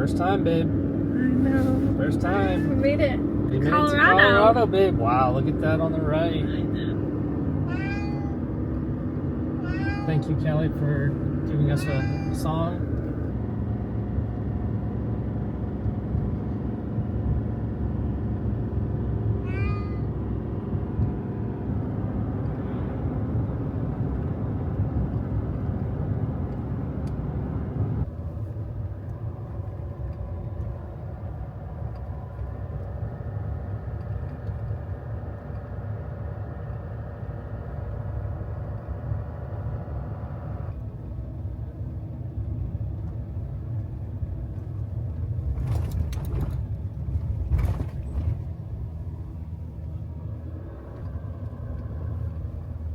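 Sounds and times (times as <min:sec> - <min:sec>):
vehicle engine and road noise: 0:00.0 - 0:52.9
cat meowing: 0:07.6 - 0:08.5, 0:09.6 - 0:10.3, 0:11.8 - 0:12.5, 0:19.4 - 0:20.2.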